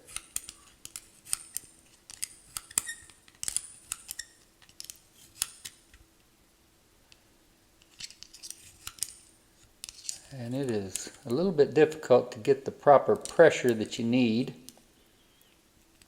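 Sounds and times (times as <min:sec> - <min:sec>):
tweezers clicking and scraping metal: 0:00.1 - 0:05.8, 0:07.8 - 0:11.3.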